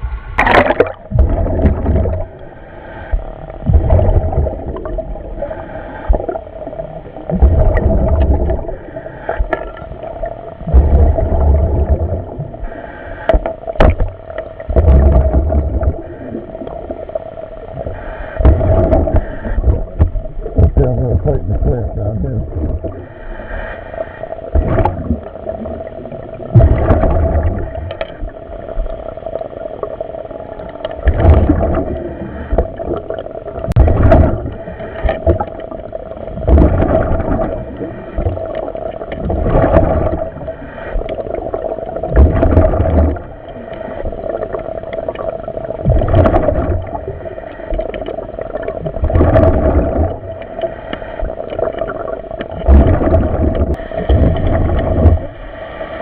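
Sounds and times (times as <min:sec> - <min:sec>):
rush of air and bubbles: 0:00.0 - 0:56.0
steady hum: 0:00.0 - 0:56.0
diver breathing over radio: 0:05.3 - 0:06.4, 0:08.6 - 0:09.6, 0:12.5 - 0:13.5, 0:17.8 - 0:20.2, 0:20.8 - 0:24.6, 0:31.9 - 0:33.1, 0:34.4 - 0:35.5, 0:40.4 - 0:41.3, 0:43.3 - 0:44.6, 0:50.4 - 0:51.5.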